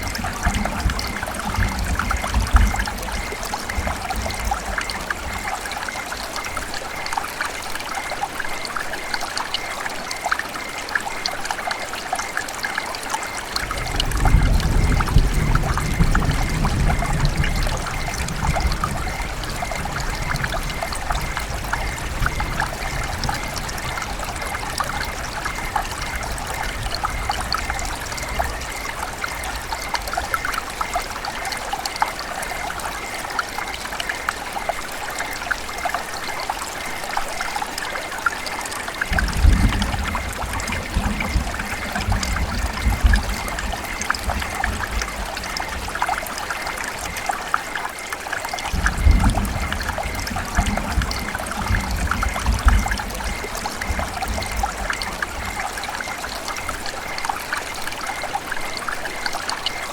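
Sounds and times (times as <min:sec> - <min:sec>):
river water babbling: 0:17.5 - 0:59.9.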